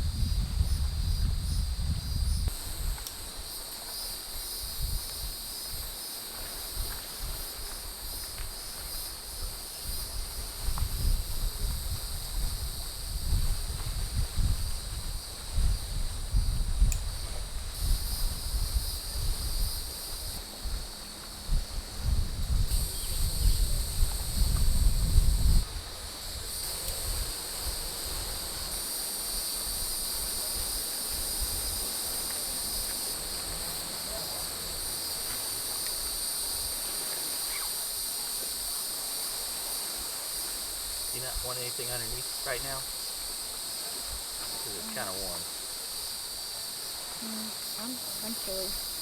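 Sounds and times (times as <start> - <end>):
wind rumbling on microphone: 0.0 - 38.0
insects buzzing: 0.0 - 49.0.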